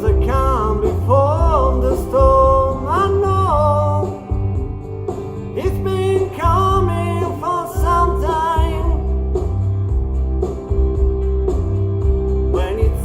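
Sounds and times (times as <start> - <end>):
person singing: 0.0 - 4.6, 5.5 - 9.5, 12.4 - 13.0
country-rock backing track: 0.0 - 13.0.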